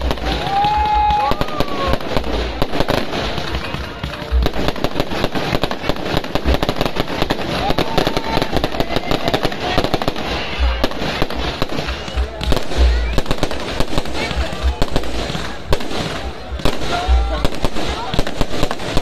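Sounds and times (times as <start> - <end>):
fireworks bangs and crackles: 0.0 - 19.0
heavy fireworks booms: 0.0 - 19.0.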